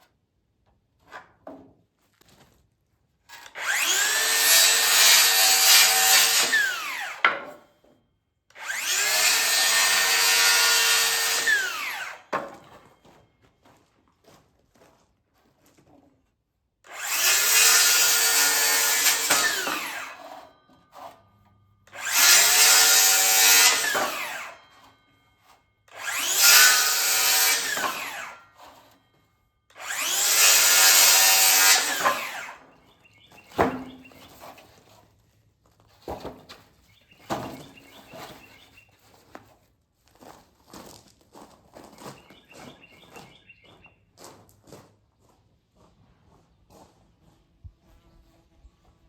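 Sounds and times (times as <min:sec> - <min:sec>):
electric saw cutting wood: 0:03.4 - 0:07.5, 0:08.5 - 0:12.6, 0:16.9 - 0:21.2, 0:21.9 - 0:25.0, 0:25.9 - 0:29.0, 0:29.7 - 0:32.7.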